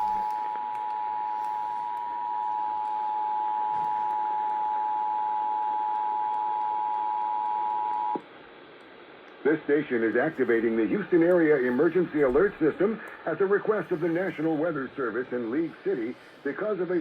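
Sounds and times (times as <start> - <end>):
faint radio hiss: 0.0 - 17.0.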